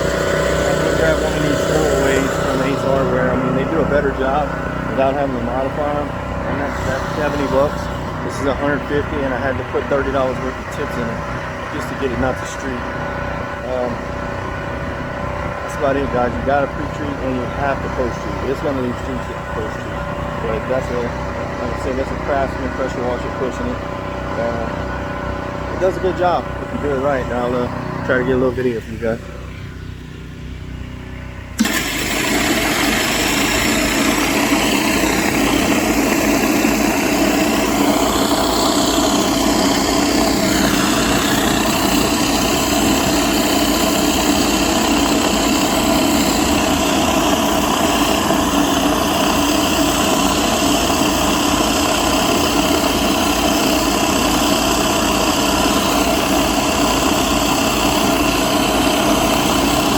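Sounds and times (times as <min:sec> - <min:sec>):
pressure washer engine running: 0:00.0 - 0:59.9
water spray hissing: 0:06.6 - 0:08.3.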